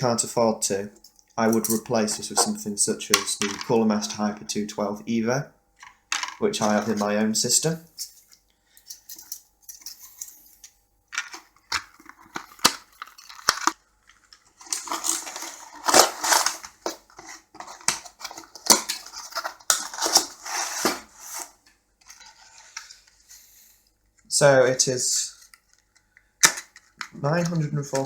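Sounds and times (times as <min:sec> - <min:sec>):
plastic crinkling and rustling: 0:11.1 - 0:23.3.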